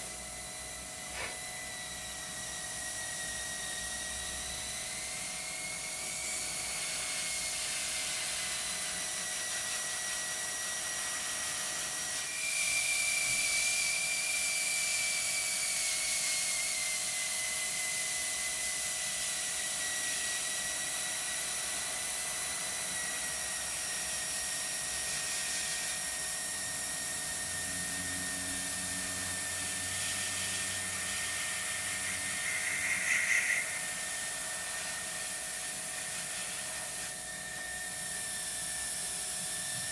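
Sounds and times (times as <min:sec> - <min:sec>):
small compressor whine: 0:00.0 - 0:39.9
airbrush air hiss: 0:29.8 - 0:37.4.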